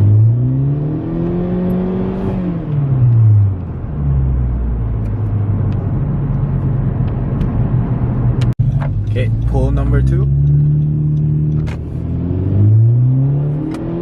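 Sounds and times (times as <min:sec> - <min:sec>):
car engine accelerating: 0:00.0 - 0:14.0.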